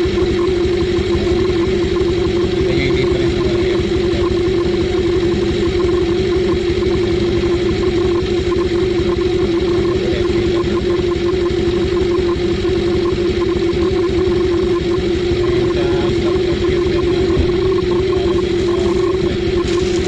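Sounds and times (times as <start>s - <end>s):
scooter engine idling: 0.0s - 20.0s.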